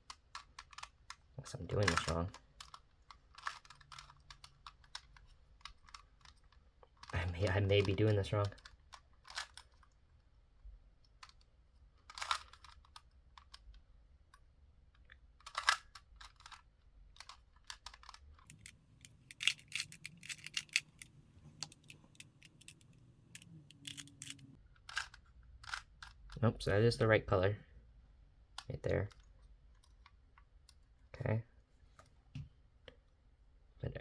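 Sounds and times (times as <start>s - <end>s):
plastic clicks of cube layers turning: 0.0s - 26.4s.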